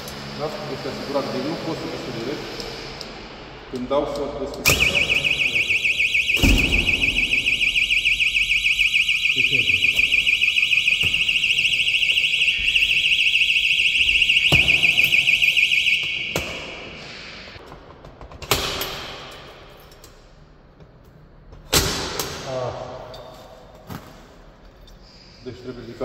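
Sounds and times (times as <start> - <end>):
door alarm warbling tone: 4.7 - 16.8.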